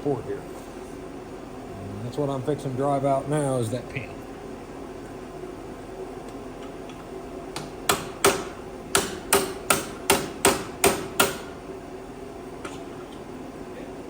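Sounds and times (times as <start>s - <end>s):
hammer striking steel pin: 7.6s - 11.6s.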